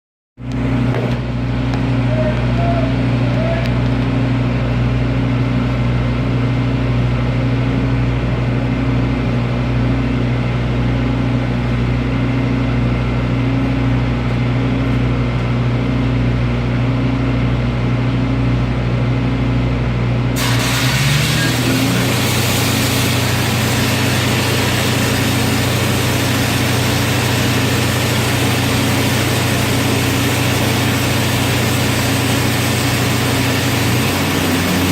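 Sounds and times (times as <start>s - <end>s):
welding arc crackling hiss: 20.4s - 34.9s
welding machine engine running: 20.4s - 34.9s.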